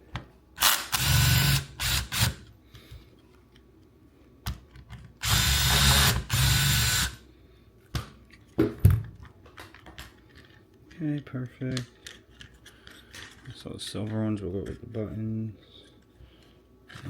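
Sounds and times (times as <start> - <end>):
power drill running: 0.6 - 2.4, 5.2 - 7.2.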